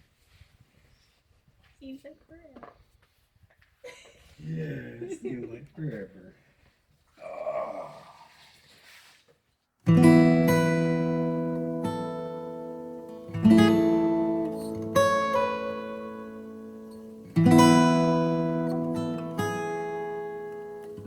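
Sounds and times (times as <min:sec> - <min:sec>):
acoustic guitar strummed chords: 0:09.9 - 0:21.0.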